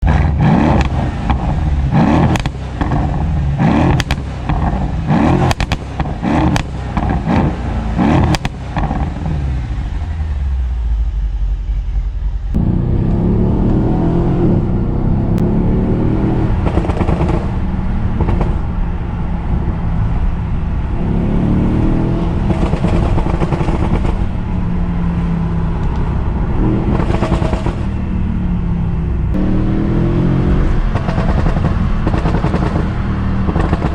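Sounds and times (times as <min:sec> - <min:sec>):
exhaust crackles and pops: 0:00.0 - 0:13.8, 0:16.5 - 0:20.7, 0:22.3 - 0:24.7, 0:25.7 - 0:28.1, 0:30.7 - 0:33.9
car engine revving: 0:00.0 - 0:33.9.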